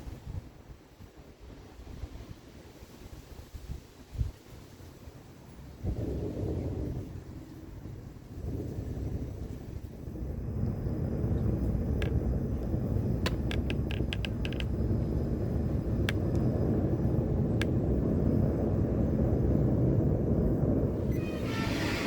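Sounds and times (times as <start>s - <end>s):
gas burner rumbling: 9.8s - 22.0s
sharp clicks and ticks: 10.6s - 16.7s.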